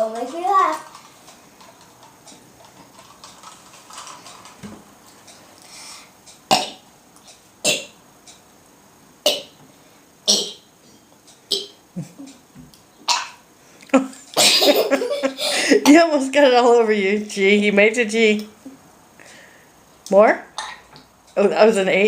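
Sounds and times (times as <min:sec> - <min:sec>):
girl burping: 0:10.3 - 0:10.6, 0:11.5 - 0:11.8.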